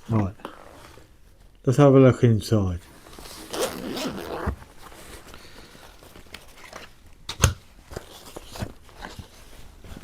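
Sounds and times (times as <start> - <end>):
rustling and crinkling in pouch: 2.9 - 7.1, 7.7 - 10.0.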